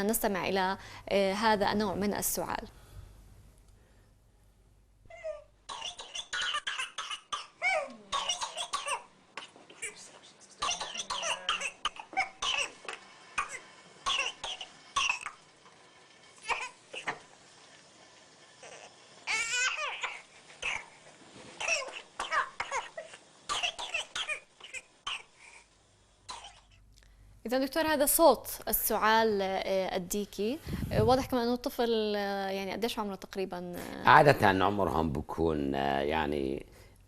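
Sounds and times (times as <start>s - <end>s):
baby coughing: 5.2s - 10.0s, 10.6s - 15.4s, 16.4s - 17.2s, 18.7s - 21.0s, 21.6s - 25.5s, 26.3s - 26.8s.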